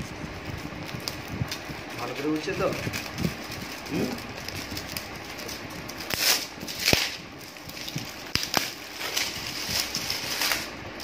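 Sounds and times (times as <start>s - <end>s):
cardboard rustling: 0.0s - 11.0s.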